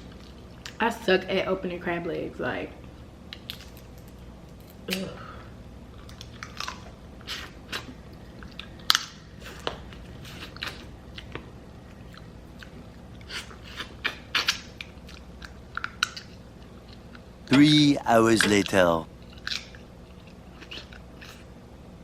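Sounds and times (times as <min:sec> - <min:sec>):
chewing: 0:05.9 - 0:17.3, 0:19.2 - 0:21.5.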